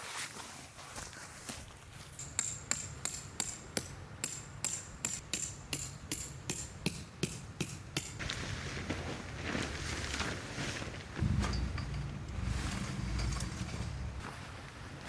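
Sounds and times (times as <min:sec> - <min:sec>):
hammer striking metal tent peg: 0:02.2 - 0:08.2.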